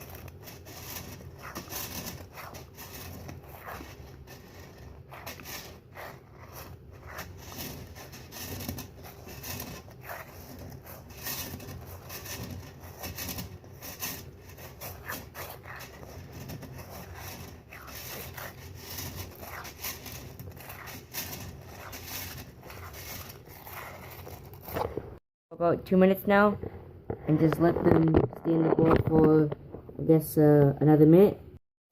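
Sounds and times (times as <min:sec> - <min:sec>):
sock of plastic pellets scraping in water: 0:00.0 - 0:24.8.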